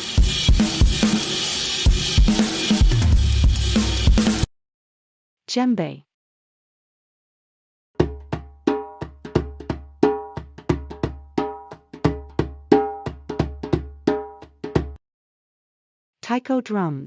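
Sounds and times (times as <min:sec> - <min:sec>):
hand drum rhythm: 0:08.0 - 0:15.0.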